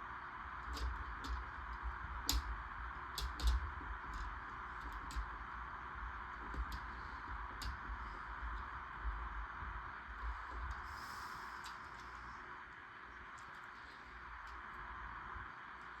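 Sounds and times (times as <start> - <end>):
background hiss: 10.3 - 16.0.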